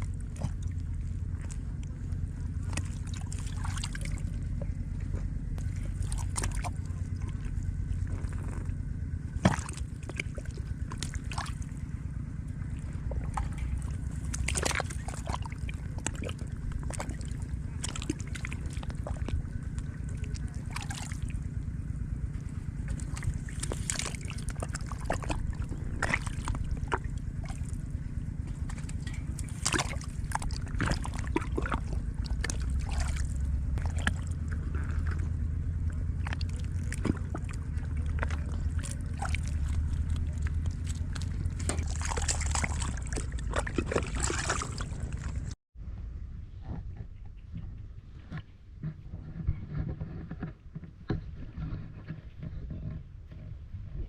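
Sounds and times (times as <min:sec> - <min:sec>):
water sloshing and splashing: 0:00.0 - 0:45.6
low rumble: 0:00.0 - 0:54.0.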